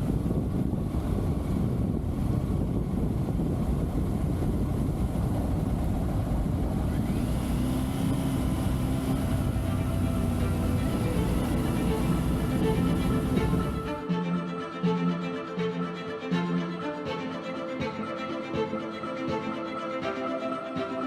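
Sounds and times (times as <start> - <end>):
motorcycle engine running: 0.0 - 14.0
wind rushing over microphone: 0.0 - 14.0.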